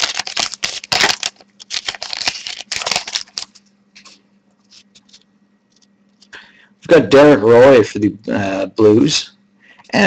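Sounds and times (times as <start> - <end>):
foil wrapper tearing and crinkling: 0.0 - 5.2
cards rustling: 0.0 - 6.4.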